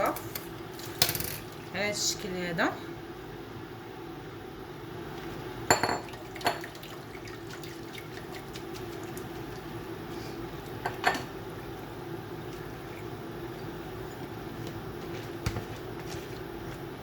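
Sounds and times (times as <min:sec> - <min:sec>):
steady low hum: 0:00.0 - 0:17.0
dishes and utensils clinking: 0:10.8 - 0:11.3.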